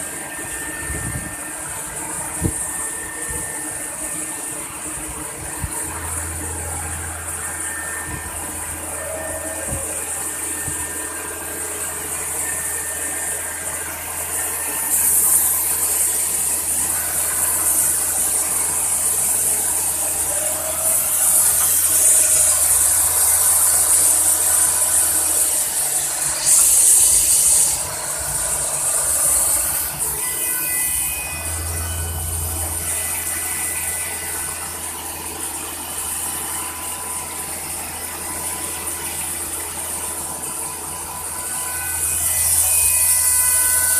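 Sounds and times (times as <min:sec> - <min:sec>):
machine hum and whine: 0:00.0 - 0:43.9
high hiss: 0:20.3 - 0:31.3.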